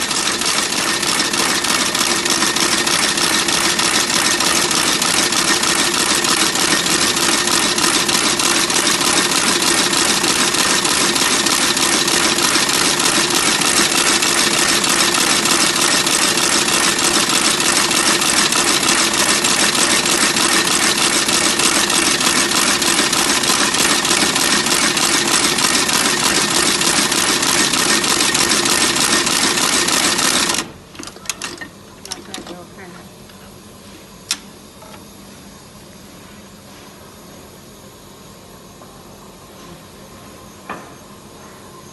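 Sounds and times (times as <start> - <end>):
sewing machine clattering: 0.0 - 32.6.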